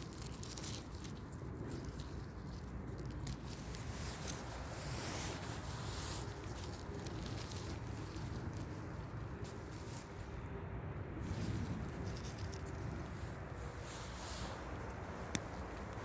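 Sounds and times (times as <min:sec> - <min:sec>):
leaf litter rustling and crackling: 0:00.0 - 0:10.4
wind rumbling on microphone: 0:00.0 - 0:16.0.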